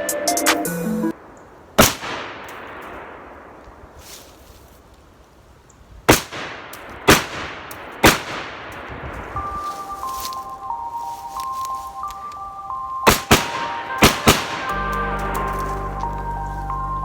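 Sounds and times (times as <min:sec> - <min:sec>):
gunshots with echo: 0:01.8 - 0:03.6, 0:06.1 - 0:09.2, 0:13.0 - 0:15.4.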